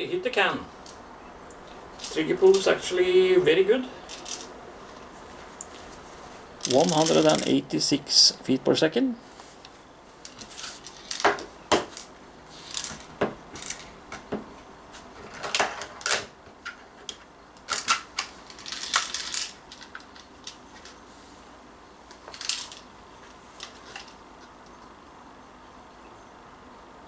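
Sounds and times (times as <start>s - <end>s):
plastic pistol clicks and rattles: 15.5s - 21.0s.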